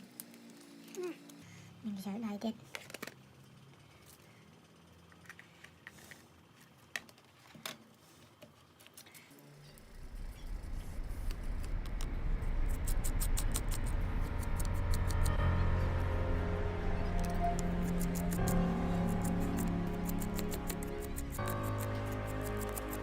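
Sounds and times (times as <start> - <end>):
background music: 12.8 - 23.0.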